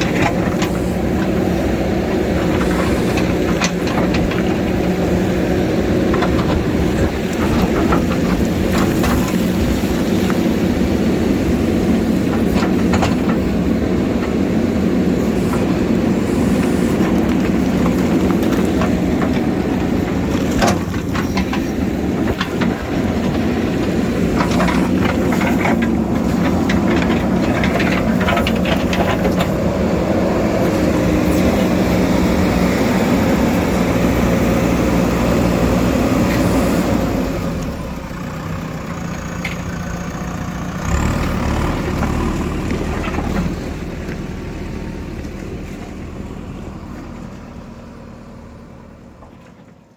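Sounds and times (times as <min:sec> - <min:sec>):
diesel engine running: 0:00.0 - 0:49.9
bucket clanking and scraping on rock: 0:02.4 - 0:05.0, 0:06.0 - 0:11.0, 0:11.6 - 0:14.4, 0:15.2 - 0:33.4.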